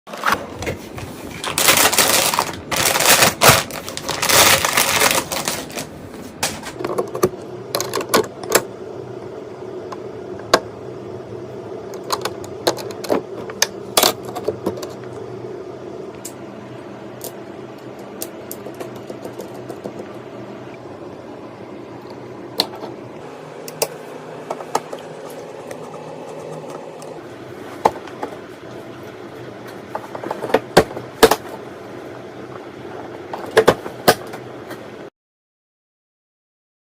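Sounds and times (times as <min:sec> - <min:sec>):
computer parts rustling and scraping: 0:00.1 - 0:08.7, 0:12.0 - 0:15.2, 0:23.7 - 0:31.6
steady low hum: 0:00.1 - 0:35.1.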